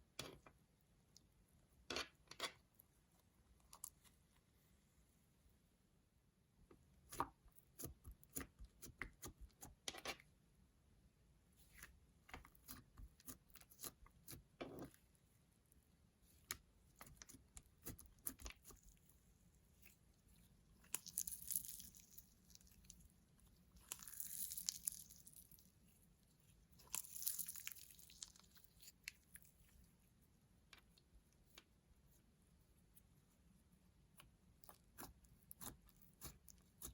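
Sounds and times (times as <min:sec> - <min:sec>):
slime crackly stretching: 0:20.8 - 0:23.0, 0:23.7 - 0:25.7, 0:26.8 - 0:29.4.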